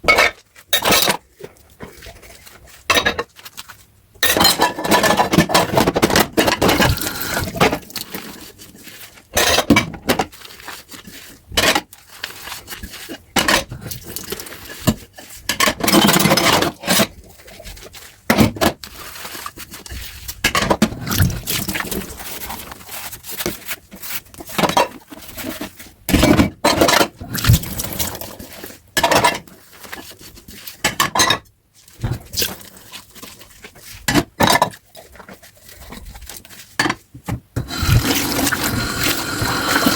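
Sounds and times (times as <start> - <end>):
dish scrubbing and scraping: 0.0 - 39.9
water: 37.6 - 39.9.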